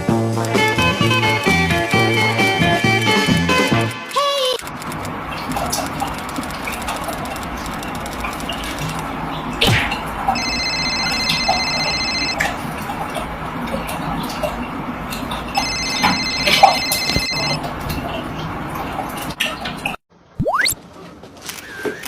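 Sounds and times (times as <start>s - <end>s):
sharp clicks: 4.1s - 9.1s
telephone ringing: 10.4s - 12.4s, 15.6s - 17.6s.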